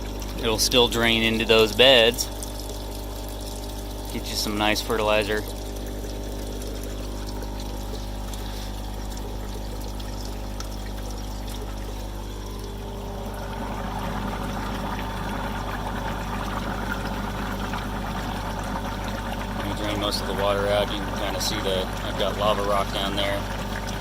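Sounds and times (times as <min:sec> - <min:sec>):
steady low hum: 0:00.0 - 0:24.0
water pouring from drain valve: 0:00.0 - 0:24.0.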